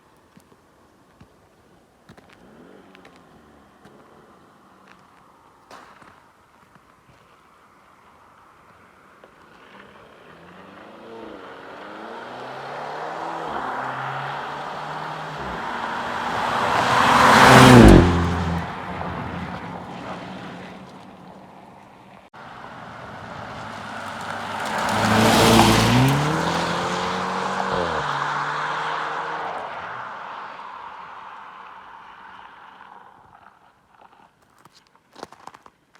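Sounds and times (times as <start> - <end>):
car exhaust driving past: 10.4 - 21.3, 22.5 - 33.2.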